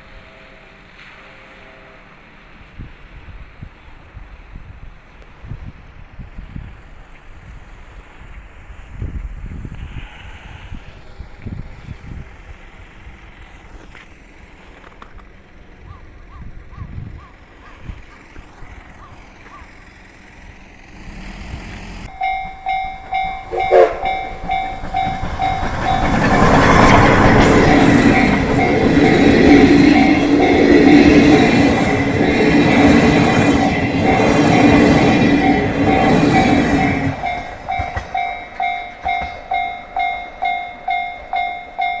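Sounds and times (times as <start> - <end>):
train rumbling: 0.0 - 42.0
level crossing bell dinging: 22.1 - 26.2, 27.5 - 42.0.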